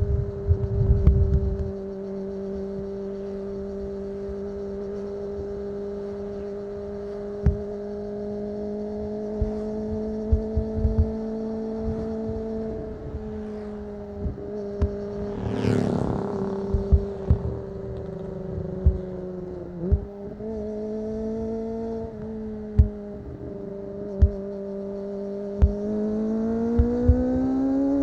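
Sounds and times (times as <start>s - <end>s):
wind buffeting microphone: 0.0s - 1.8s, 9.9s - 20.4s
motorcycle engine cruising: 0.0s - 28.0s.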